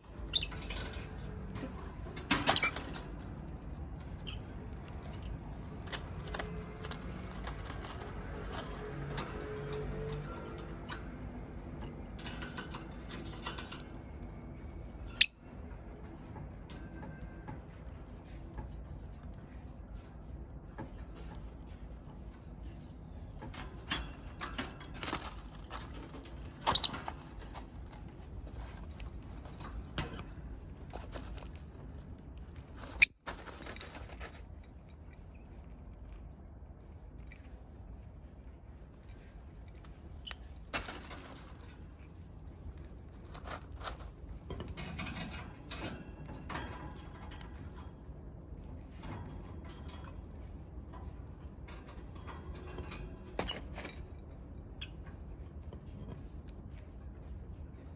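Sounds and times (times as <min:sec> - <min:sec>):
lovebirds squeaking and chirping: 0:00.0 - 0:01.2, 0:02.2 - 0:03.2, 0:03.8 - 0:06.4, 0:14.9 - 0:15.6, 0:26.6 - 0:27.3, 0:32.8 - 0:33.3.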